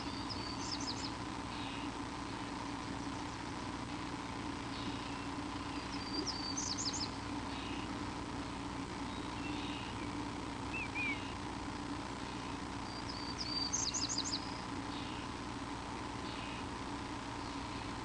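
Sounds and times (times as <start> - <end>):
steady background hum: 0.0 - 18.0
bird chirping and whistling: 5.9 - 7.1, 10.7 - 11.2, 12.9 - 14.6.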